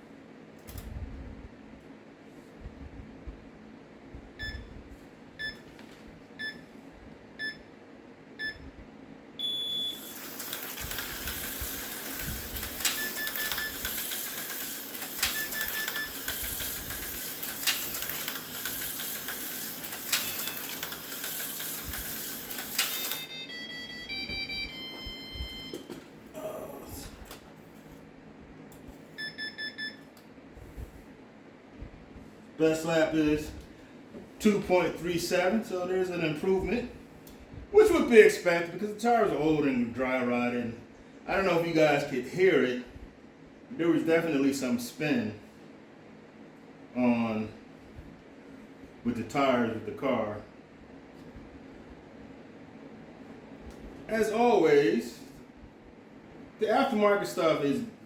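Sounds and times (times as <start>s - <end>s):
electronic timer beeping: 9.4s - 17.1s, 21.8s - 25.8s, 29.2s - 30.0s
slot car motor whirring: 10.0s - 23.3s.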